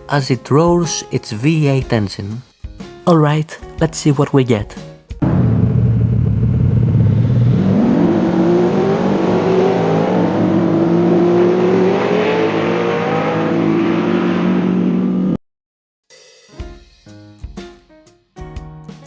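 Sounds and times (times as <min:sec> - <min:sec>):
race car engine revving: 0:05.2 - 0:15.4.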